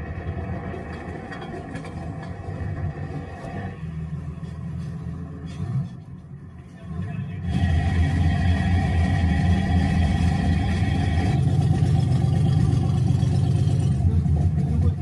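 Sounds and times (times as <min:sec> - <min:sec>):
vehicle engine rumbling: 0:00.0 - 0:15.0
high-pitched whine: 0:06.6 - 0:14.2.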